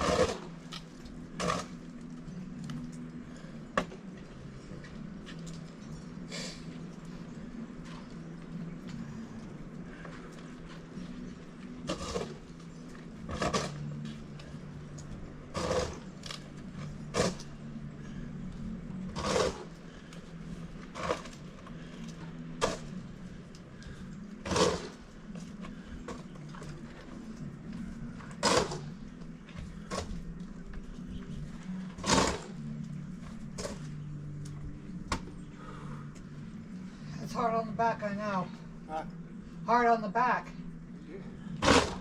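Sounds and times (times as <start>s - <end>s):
snow shovel scraping: 0.0s - 0.6s, 11.9s - 12.5s, 15.5s - 16.1s, 19.1s - 19.7s, 24.4s - 25.0s, 32.0s - 32.6s.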